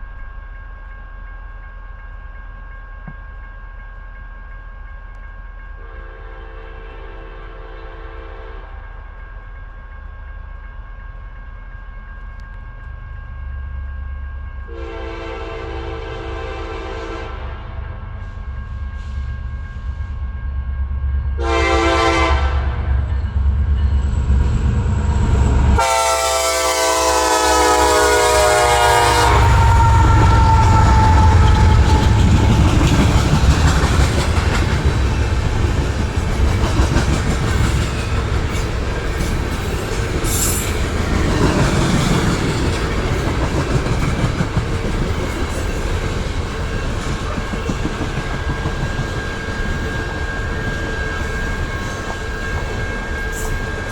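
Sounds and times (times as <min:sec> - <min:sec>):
train rumbling and clattering on rails: 0:00.0 - 0:53.9
locomotive air horn blasts: 0:05.8 - 0:08.8, 0:14.7 - 0:17.9, 0:21.4 - 0:22.9, 0:25.8 - 0:32.6.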